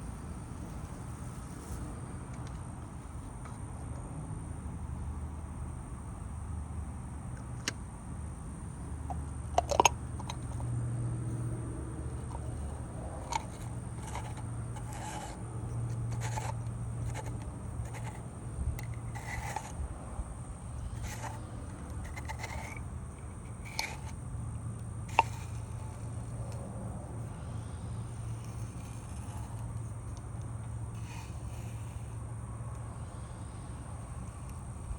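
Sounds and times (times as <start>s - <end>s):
low steady hum: 0.0s - 34.9s
small hard parts clicking: 13.2s - 19.8s, 20.8s - 24.2s.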